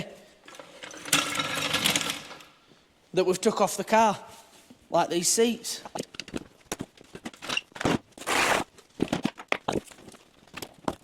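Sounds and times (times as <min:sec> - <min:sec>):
short scrape: 0:08.2 - 0:08.7.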